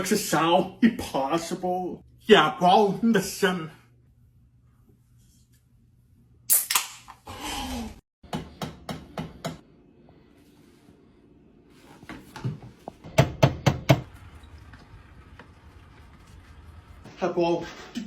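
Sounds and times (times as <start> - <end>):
drink fizzing: 14.1 - 17.1.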